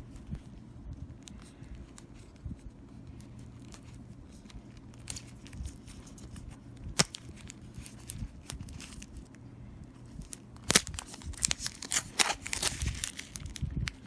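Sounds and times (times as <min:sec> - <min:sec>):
faint low hum: 0:00.0 - 0:14.0
packaging rustling: 0:03.2 - 0:09.4, 0:10.0 - 0:14.0.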